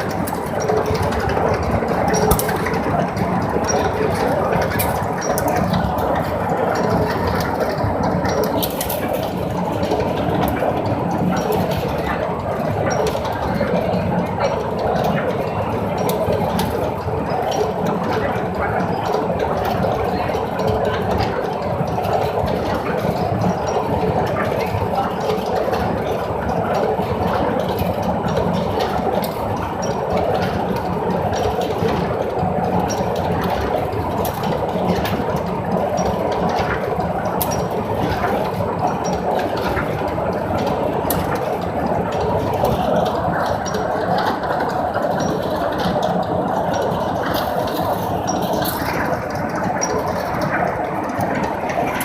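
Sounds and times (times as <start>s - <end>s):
welding machine drone: 0.0s - 13.5s.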